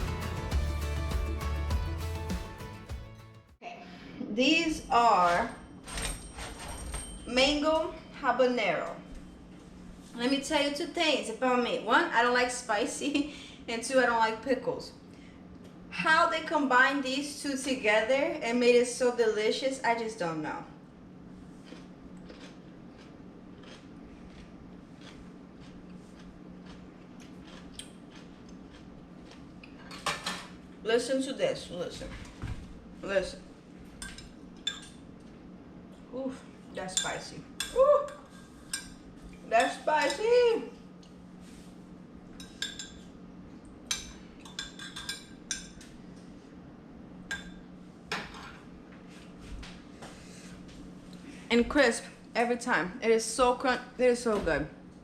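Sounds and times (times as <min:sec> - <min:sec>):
steady low hum: 0:03.6 - 0:55.0
crisp crunching of chewing: 0:21.6 - 0:29.8.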